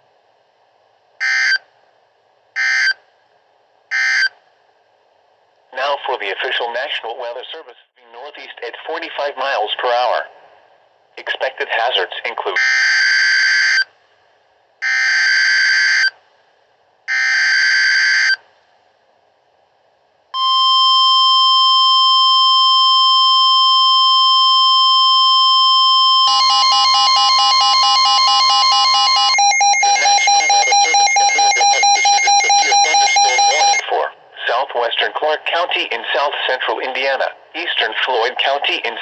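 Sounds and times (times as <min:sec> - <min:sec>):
long steady alert tone: 0:20.4 - 0:33.9
screeching digital data bursts: 0:26.8 - 0:33.8.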